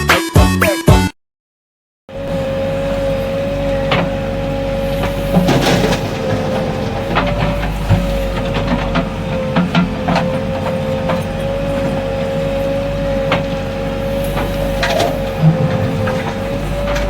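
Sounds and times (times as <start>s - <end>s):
diesel engine rumble: 2.1s - 17.0s
machine knocks and clanks: 3.6s - 17.0s.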